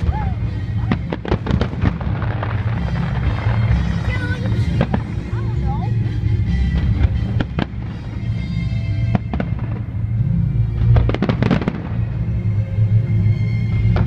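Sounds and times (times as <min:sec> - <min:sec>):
fireworks bangs: 0:00.0 - 0:05.5, 0:06.6 - 0:10.1, 0:10.8 - 0:12.2
loud music: 0:00.0 - 0:14.0.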